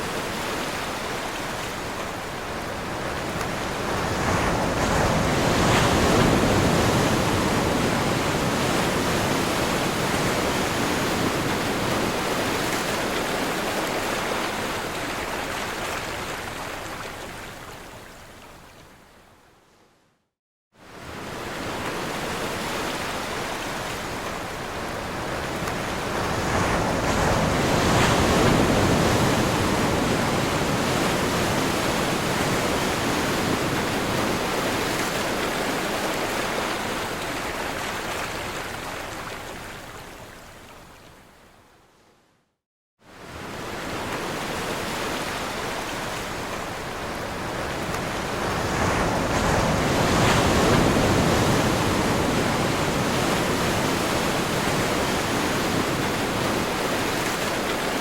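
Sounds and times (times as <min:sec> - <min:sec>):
ocean surf breaking: 0:21.3 - 0:39.2, 0:43.2 - 0:58.0.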